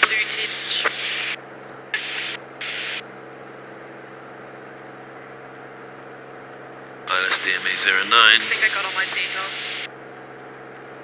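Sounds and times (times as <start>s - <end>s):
intercom hiss bursts: 0.0s - 3.0s, 7.1s - 9.9s
aircraft engine droning: 4.9s - 11.0s.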